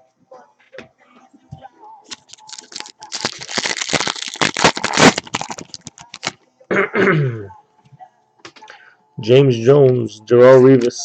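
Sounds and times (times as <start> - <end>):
wrapper tearing and crinkling: 2.1 - 6.4.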